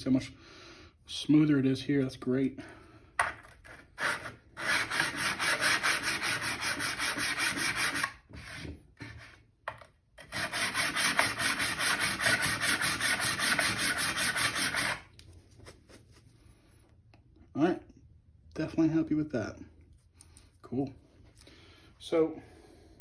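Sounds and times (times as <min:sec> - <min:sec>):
metal scraping on sandpaper: 0:03.6 - 0:09.4, 0:10.2 - 0:15.1.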